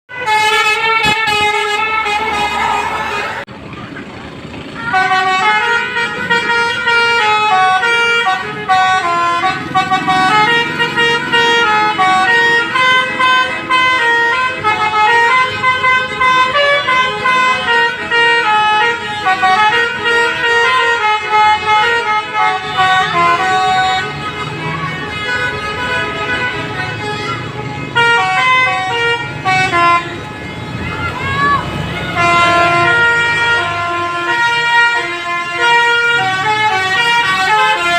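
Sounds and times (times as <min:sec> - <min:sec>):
bus air horn melody: 0:00.1 - 0:03.5, 0:04.8 - 0:37.9.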